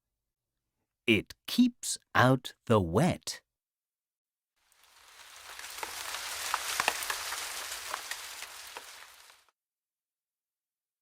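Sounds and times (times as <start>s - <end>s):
steady falling rain: 4.7s - 9.5s
single raindrops hitting: 4.8s - 9.5s.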